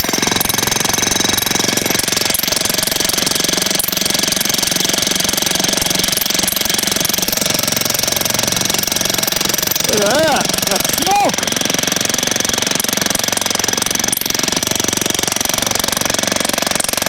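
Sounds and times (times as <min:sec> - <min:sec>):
jackhammer hammering wood: 0:00.0 - 0:17.0.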